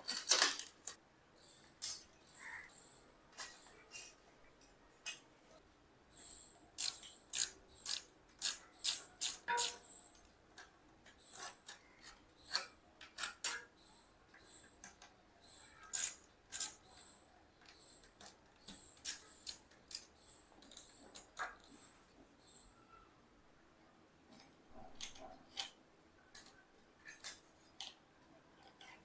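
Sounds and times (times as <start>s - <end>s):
hand tools clicking and scraping: 0.0s - 1.0s, 6.8s - 13.8s, 24.3s - 29.0s.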